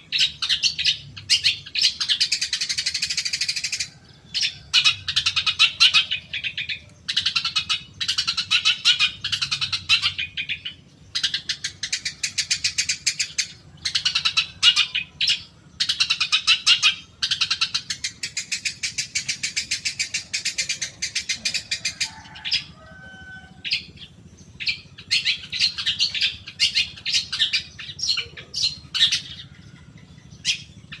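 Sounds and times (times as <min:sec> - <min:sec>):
bird harsh chattering song: 0:00.0 - 0:31.0.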